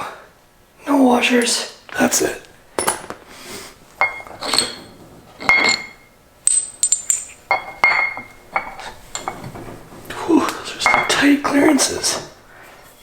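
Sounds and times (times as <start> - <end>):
small metal parts clinking: 2.7 - 3.2, 4.0 - 9.6.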